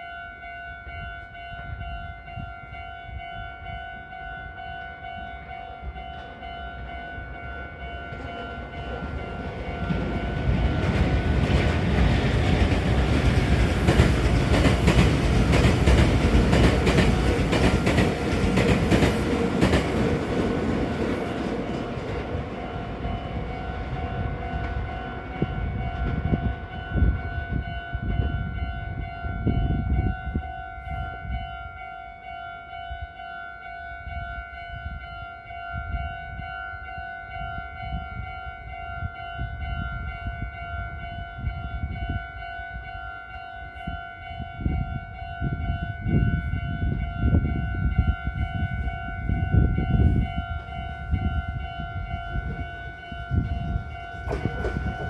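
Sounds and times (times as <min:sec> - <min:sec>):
train rumbling: 0:01.0 - 0:31.8, 0:37.3 - 0:55.0
train wheels clacking: 0:08.0 - 0:26.5, 0:52.4 - 0:55.0.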